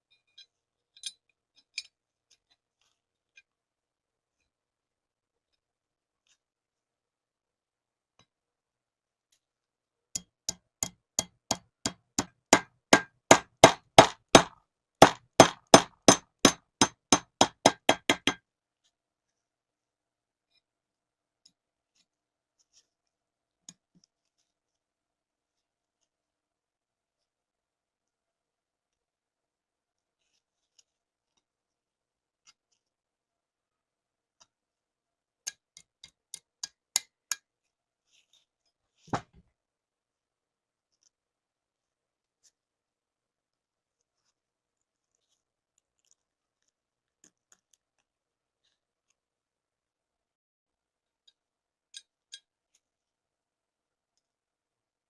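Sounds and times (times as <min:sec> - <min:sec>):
hammer striking metal: 0:12.2 - 0:18.4
heavy knock: 0:13.3 - 0:16.2, 0:16.8 - 0:18.4.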